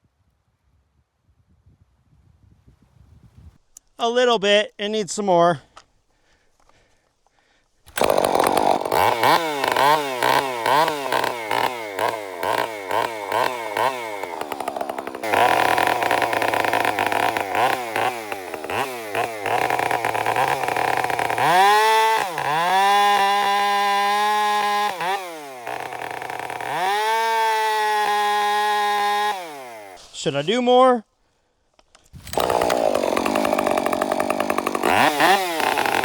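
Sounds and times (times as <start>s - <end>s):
chainsaw engine revving: 7.9s - 30.1s, 32.2s - 36.0s.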